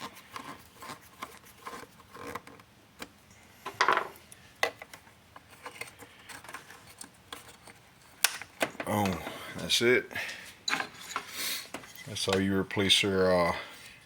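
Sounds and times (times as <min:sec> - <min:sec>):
tool handling clicks and rubbing: 0:00.0 - 0:09.3.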